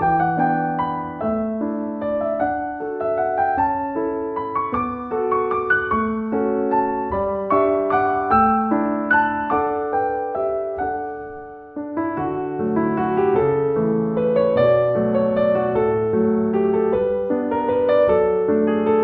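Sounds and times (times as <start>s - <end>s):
gentle piano music: 0.0s - 19.0s.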